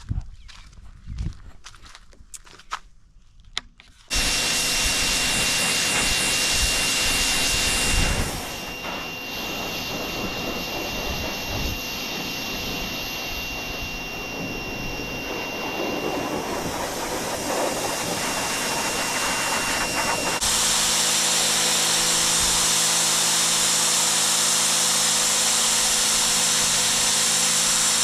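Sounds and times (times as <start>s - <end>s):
pressure washer spraying: 4.1s - 28.0s.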